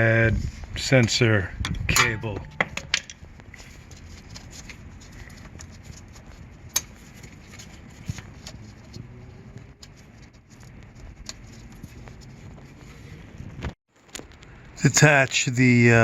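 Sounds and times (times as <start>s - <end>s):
low background hum: 0.0s - 16.0s
clicks of brake parts and tools: 1.6s - 3.2s.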